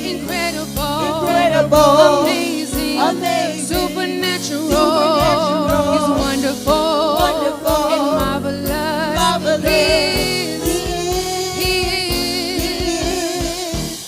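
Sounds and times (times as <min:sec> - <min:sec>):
live band playing: 0:00.0 - 0:14.0
steady drum beat: 0:00.0 - 0:14.0
choir singing long note: 0:00.8 - 0:11.7.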